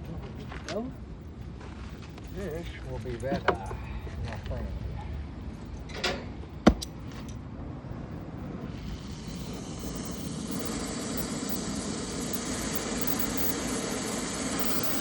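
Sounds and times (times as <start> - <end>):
torch flame hissing: 8.4 - 15.0.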